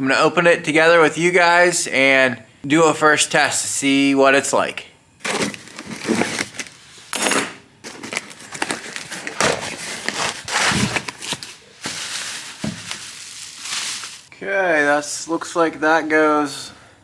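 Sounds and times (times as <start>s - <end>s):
packaging rustling and crinkling: 5.2s - 14.3s.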